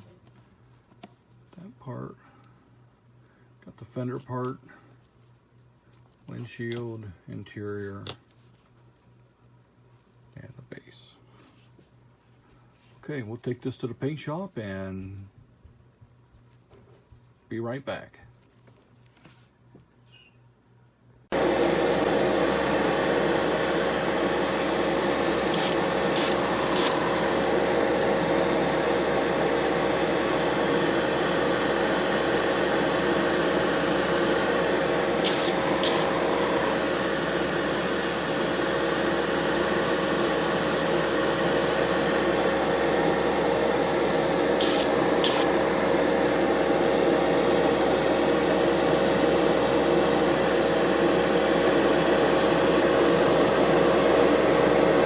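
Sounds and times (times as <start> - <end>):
steady hum: 19.8 - 55.0
spray paint hissing bursts: 35.2 - 36.1, 44.6 - 45.5.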